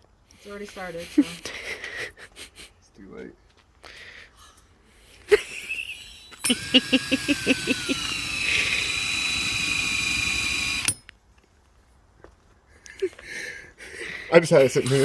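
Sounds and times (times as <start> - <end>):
power drill cutting plastic: 5.3 - 11.1, 14.6 - 15.0
drill switch click: 6.3 - 11.1.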